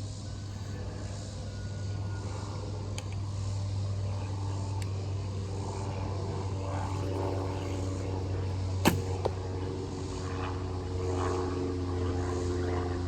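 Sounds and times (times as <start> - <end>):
propeller airplane droning: 0.0 - 13.0
bow string snap: 8.8 - 9.4
arrow striking target: 8.8 - 9.5.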